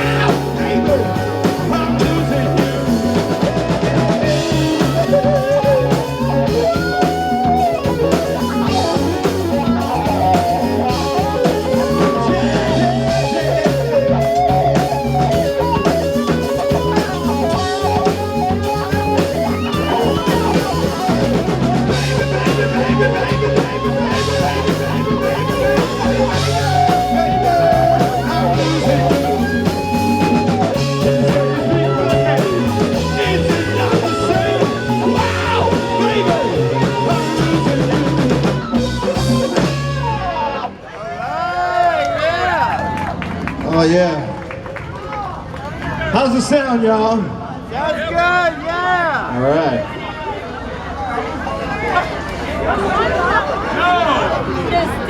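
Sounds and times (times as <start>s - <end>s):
bass guitar: 0.0s - 40.9s
electric guitar lead: 0.0s - 40.9s
drums: 0.0s - 46.6s.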